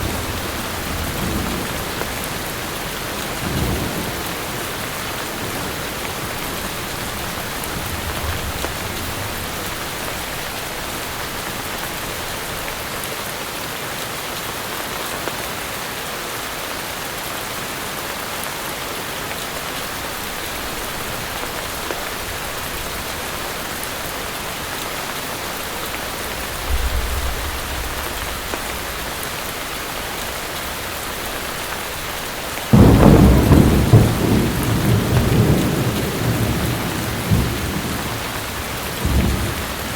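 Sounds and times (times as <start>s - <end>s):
heavy rain: 0.0s - 39.9s
thunder rumbling: 26.1s - 32.0s, 32.7s - 39.9s.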